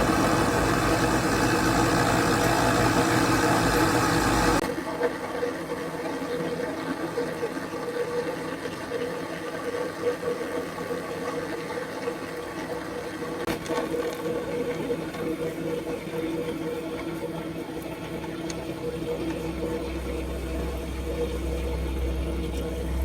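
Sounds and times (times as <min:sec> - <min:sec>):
metal lathe humming: 0:00.0 - 0:04.6.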